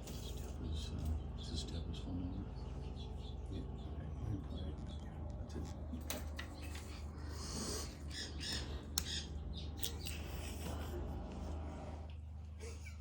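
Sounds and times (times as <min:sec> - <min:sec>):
low hum: 0:00.0 - 0:13.0
parrots squawking: 0:06.6 - 0:10.7.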